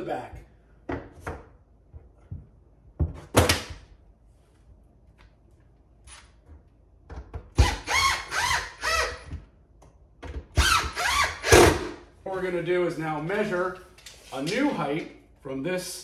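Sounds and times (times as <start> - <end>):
drill driving screws into wood: 7.6 - 9.3, 10.6 - 11.9.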